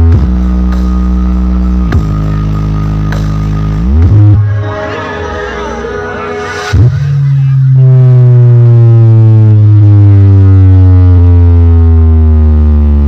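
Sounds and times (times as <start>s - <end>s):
deep tone sliding down in pitch: 3.8s - 13.0s.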